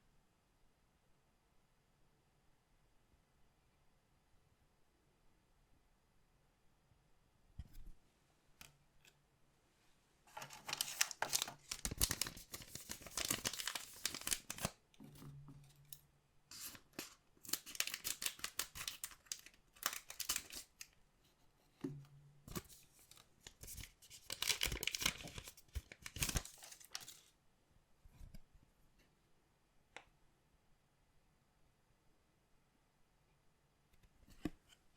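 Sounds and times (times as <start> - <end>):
wrappers tearing and crinkling: 10.3 - 14.7, 16.5 - 20.8, 23.6 - 27.2.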